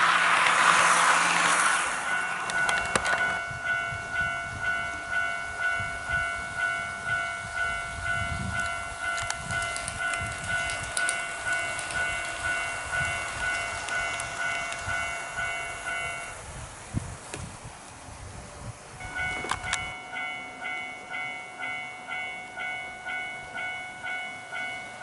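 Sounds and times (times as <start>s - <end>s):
wheels clicking on track: 0.0s - 18.0s
model train rumbling: 0.0s - 25.0s
level crossing electronic bell: 19.0s - 25.0s.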